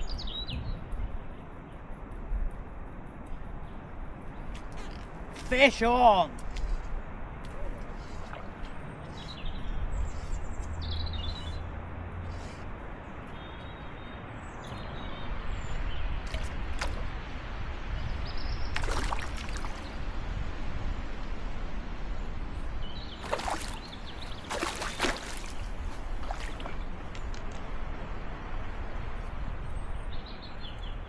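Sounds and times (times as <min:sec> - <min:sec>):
small birds chirping: 0:00.0 - 0:01.8, 0:03.2 - 0:17.2, 0:22.6 - 0:27.5
wind buffeting microphone: 0:00.0 - 0:13.4, 0:14.4 - 0:31.0.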